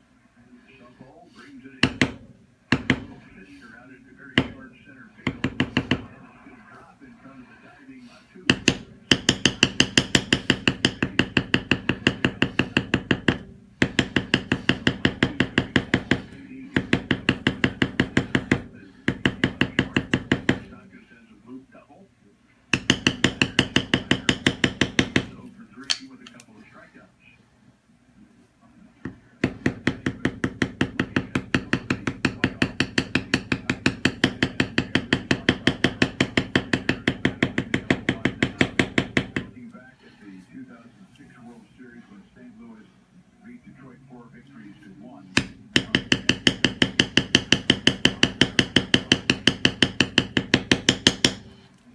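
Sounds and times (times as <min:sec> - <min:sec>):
mallet striking stamping tool: 0:45.4 - 0:51.5.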